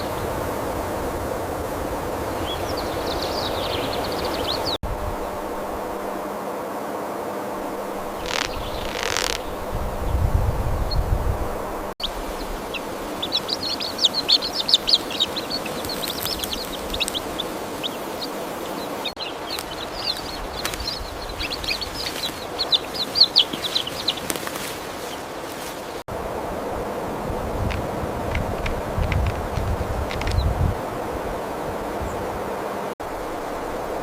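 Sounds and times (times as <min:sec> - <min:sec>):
forest background hiss: 0:00.0 - 0:34.0
songbird chipping and twittering: 0:02.3 - 0:04.8, 0:08.2 - 0:10.2, 0:12.0 - 0:26.0.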